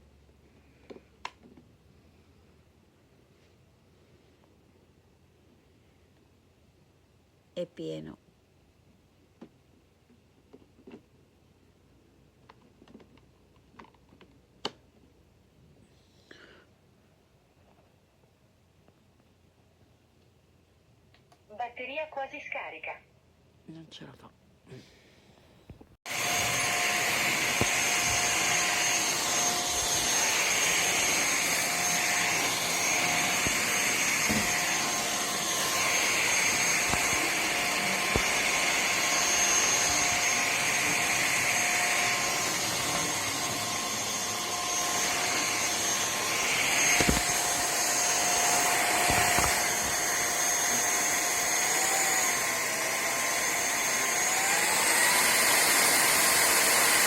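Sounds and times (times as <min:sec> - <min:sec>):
vacuum head knocking floor: 0:26.1 - 0:40.3
vacuum cleaner motor whine: 0:26.1 - 0:57.0.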